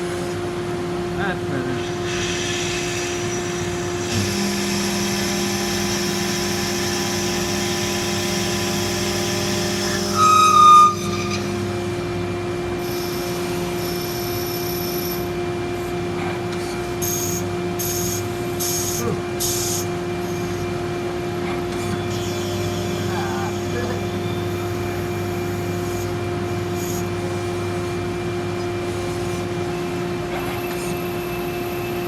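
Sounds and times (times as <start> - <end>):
lathe machine hum: 0.0 - 32.0
metal cutting tones: 1.8 - 15.2
high-pitched squeal: 8.5 - 12.1.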